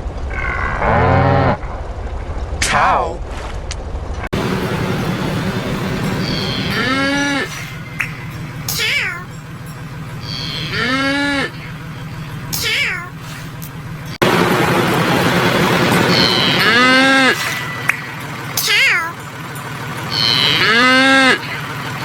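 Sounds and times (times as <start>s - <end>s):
pitch-shifted cow moo: 0.3s - 1.6s, 6.1s - 7.8s, 10.2s - 12.4s, 16.0s - 17.8s, 20.1s - 21.5s.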